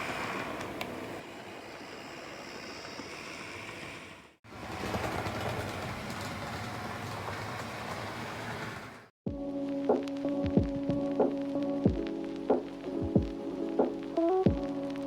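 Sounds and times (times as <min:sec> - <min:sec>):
model train motor whirring: 0:00.0 - 0:06.7.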